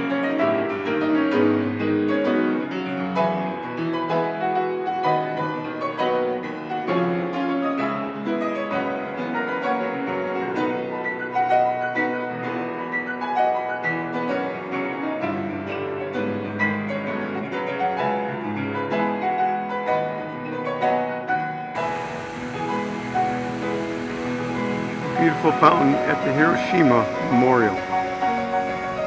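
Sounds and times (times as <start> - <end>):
calm classical piano piece: 19.2 - 29.0.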